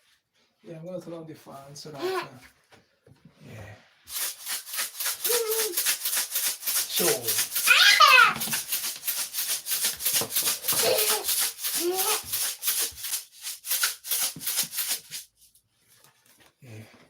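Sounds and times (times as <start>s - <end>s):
rapid rhythmic rattling: 4.1s - 15.0s.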